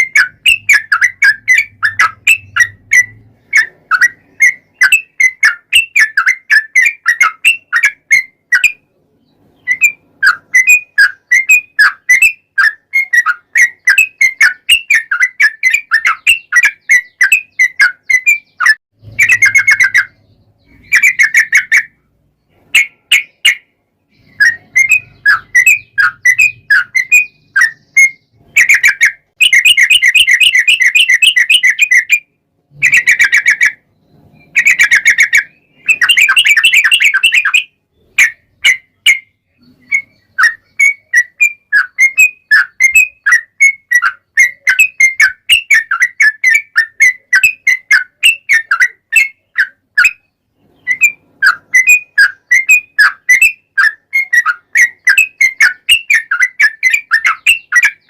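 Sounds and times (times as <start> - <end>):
bulbul singing: 0.0 - 58.0.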